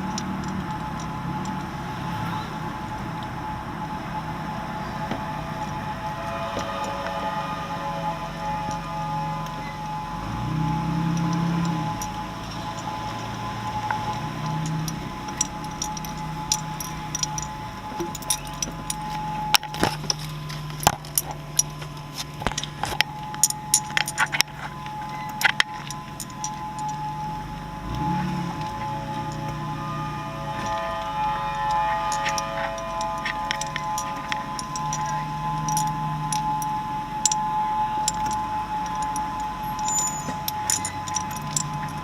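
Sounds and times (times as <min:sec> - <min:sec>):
light metallic jingling clicks: 0:00.0 - 0:01.8, 0:10.9 - 0:27.1, 0:30.6 - 0:37.4, 0:38.0 - 0:42.0
clinks and rattles in car: 0:00.0 - 0:03.6, 0:04.8 - 0:42.0
warning siren steady tone: 0:00.0 - 0:42.0.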